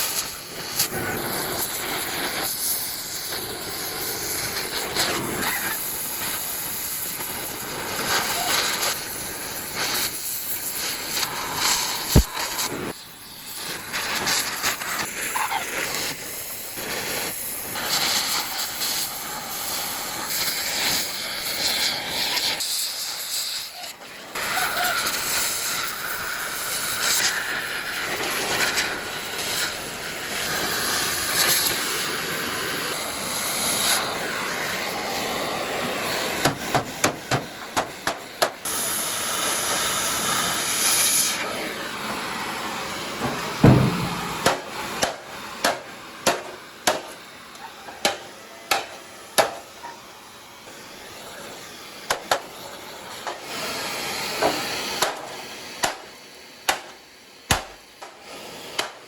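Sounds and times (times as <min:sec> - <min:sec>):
compressed air hiss: 0:00.0 - 0:59.0
sharp taps and knocks: 0:36.4 - 0:38.6, 0:43.2 - 0:47.2
heavy thump: 0:43.2 - 0:44.6.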